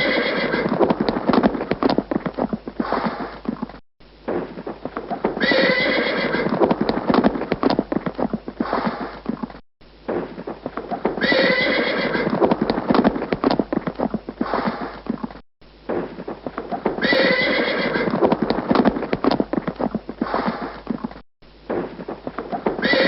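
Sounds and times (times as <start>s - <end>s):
horse whinny: 0.0s - 0.8s, 5.4s - 6.6s, 11.2s - 12.4s, 17.0s - 18.2s, 22.7s - 23.0s
horse hooves clip-clopping: 0.0s - 23.0s.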